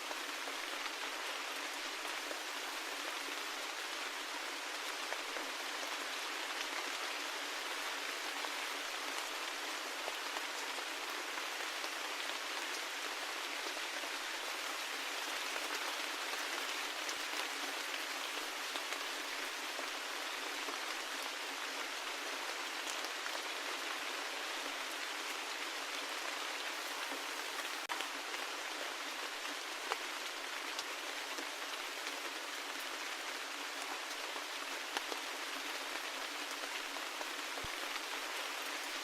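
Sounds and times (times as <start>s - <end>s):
steady rain: 0.0s - 39.0s.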